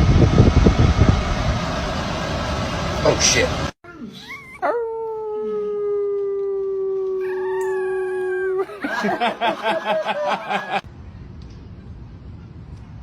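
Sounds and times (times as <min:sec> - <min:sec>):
dog howling: 0:04.3 - 0:08.8.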